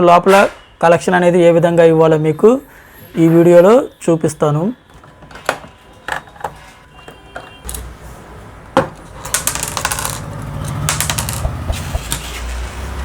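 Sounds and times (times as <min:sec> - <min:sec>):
sharp knock: 0:11.2 - 0:12.1.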